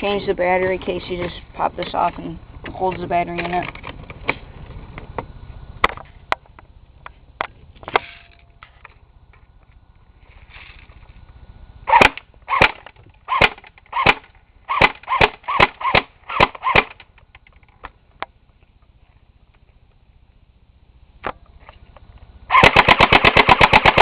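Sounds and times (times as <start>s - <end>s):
airsoft gun shots: 11.9s - 17.0s, 22.5s - 24.0s.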